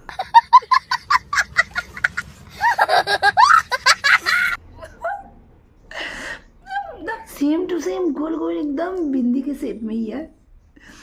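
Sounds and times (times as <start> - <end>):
woman laughing: 0.0 - 5.2.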